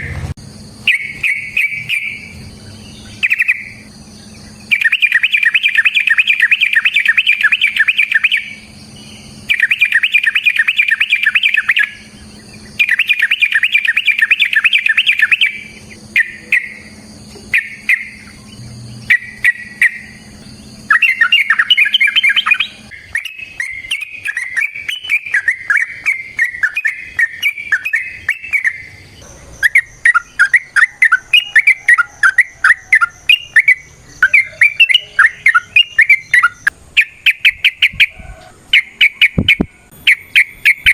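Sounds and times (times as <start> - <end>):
bird singing and chattering: 0.7 - 40.9.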